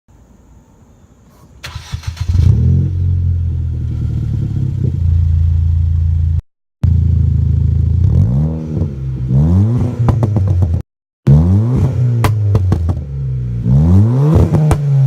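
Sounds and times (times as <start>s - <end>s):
car engine starting and idling: 1.4s - 8.0s.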